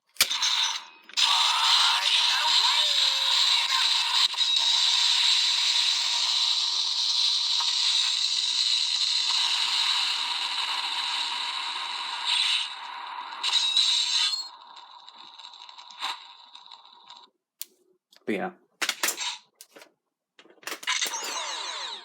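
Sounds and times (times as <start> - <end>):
toy speaker hissing crackling noise: 0.2 - 17.3.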